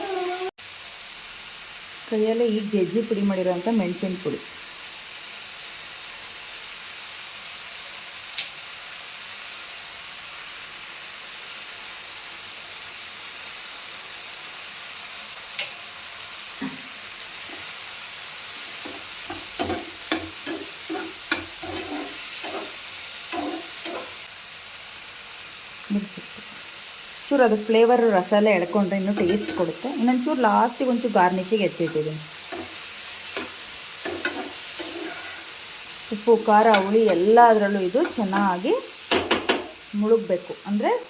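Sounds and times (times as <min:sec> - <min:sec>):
food sizzling in a frying pan: 0:00.0 - 0:41.0
spatula clinking and scraping: 0:18.6 - 0:24.3, 0:28.6 - 0:29.9, 0:31.8 - 0:35.7, 0:36.4 - 0:39.8
knocks against pan: 0:39.1 - 0:39.8.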